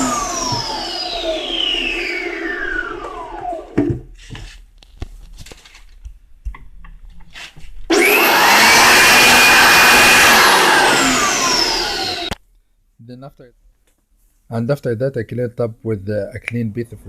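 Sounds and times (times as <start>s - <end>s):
electric air blower whining: 0.0s - 4.0s, 7.9s - 12.4s.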